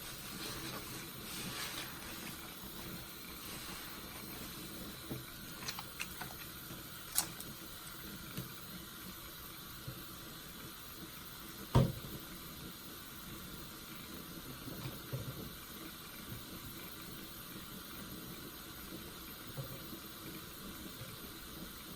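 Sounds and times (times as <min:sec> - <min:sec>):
soapy sponge squeezed: 0:05.4 - 0:07.6.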